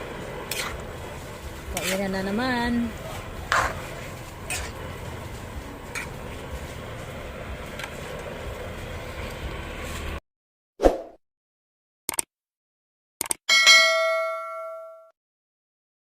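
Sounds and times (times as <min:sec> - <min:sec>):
low rumbling of cooking on stove: 0:00.0 - 0:10.2.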